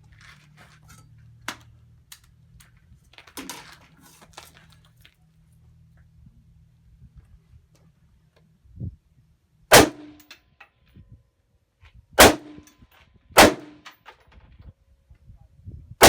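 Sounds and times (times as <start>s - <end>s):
rifle shots ringing: 9.7s - 10.3s, 12.2s - 12.7s, 13.4s - 13.9s.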